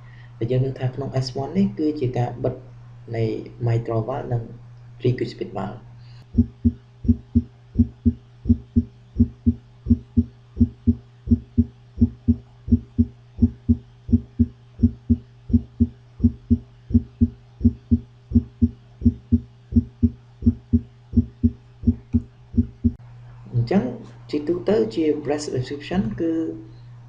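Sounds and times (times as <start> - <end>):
steady low hum: 0.0 - 27.0
heartbeat thumps: 6.3 - 23.0.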